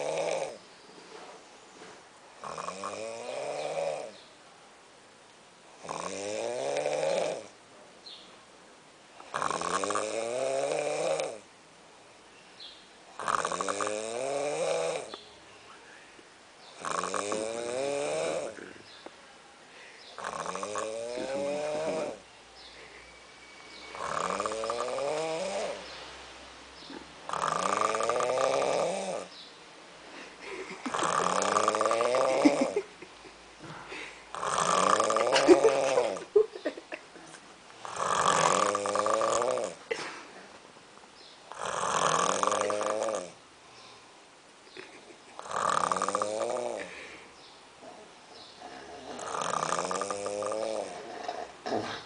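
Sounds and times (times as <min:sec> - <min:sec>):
man snoring: 0:00.0 - 0:00.6, 0:02.4 - 0:04.2, 0:05.8 - 0:07.5, 0:09.2 - 0:11.4, 0:13.2 - 0:15.2, 0:16.8 - 0:18.8, 0:20.2 - 0:22.2, 0:23.9 - 0:25.8, 0:27.3 - 0:29.3, 0:30.8 - 0:32.8, 0:34.3 - 0:36.3, 0:37.8 - 0:39.8, 0:41.5 - 0:43.4, 0:45.4 - 0:47.1, 0:48.9 - 0:51.9.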